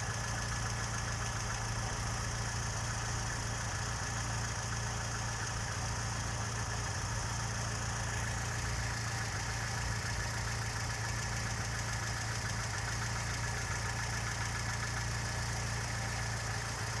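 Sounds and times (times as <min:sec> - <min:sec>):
car engine idling: 0:00.0 - 0:17.0
fast ticking engine knock: 0:00.2 - 0:17.0.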